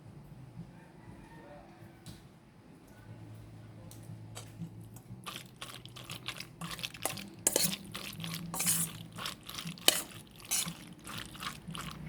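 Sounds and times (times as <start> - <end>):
utensil scraping food in pot: 5.2 - 12.0.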